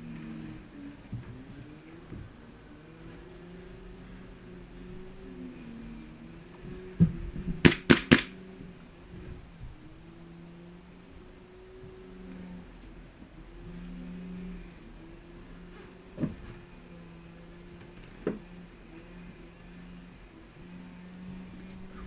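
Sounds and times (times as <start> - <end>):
airsoft gun shots: 7.6 - 8.4.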